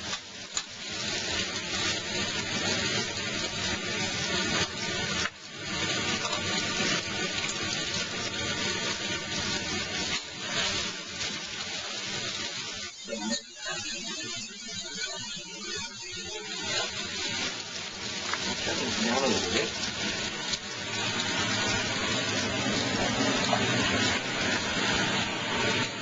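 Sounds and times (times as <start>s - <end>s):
vegetables sizzling in oil: 0.0s - 26.0s.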